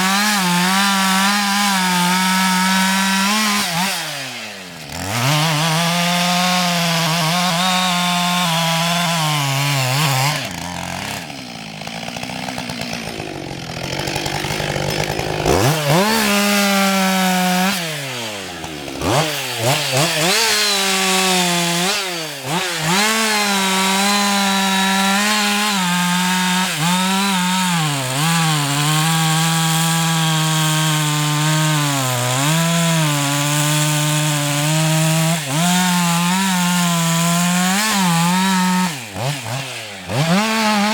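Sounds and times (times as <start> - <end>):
chainsaw cutting wood: 0.0 - 40.9.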